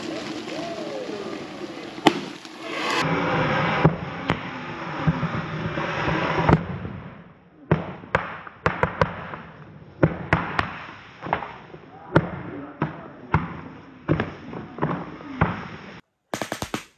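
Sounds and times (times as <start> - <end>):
fireworks hissing spray with pops: 0.0 - 7.2, 7.8 - 16.9
fireworks sharp bangs and cracks: 0.0 - 16.9.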